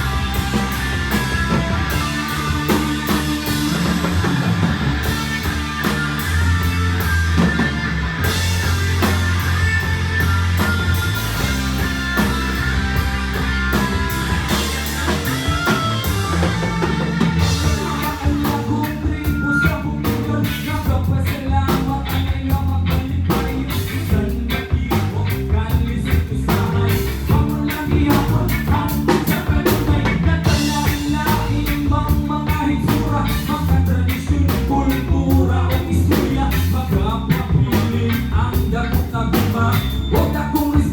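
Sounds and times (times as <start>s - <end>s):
bass guitar: 0.0s - 40.9s
drum kit steady beat: 0.0s - 40.9s
electric guitar: 0.0s - 40.9s
person singing: 17.4s - 40.9s.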